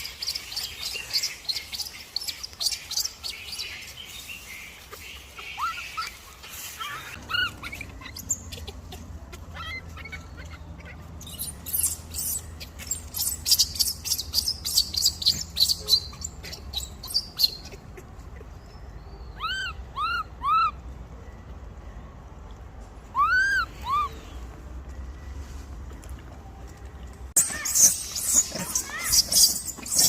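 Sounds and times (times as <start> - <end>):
monkeys squeaking and chirping: 0.0 - 20.8, 23.1 - 24.4, 27.4 - 30.0
monkey cries rising and falling: 4.8 - 18.6, 19.2 - 20.9, 23.0 - 24.4, 27.4 - 30.0.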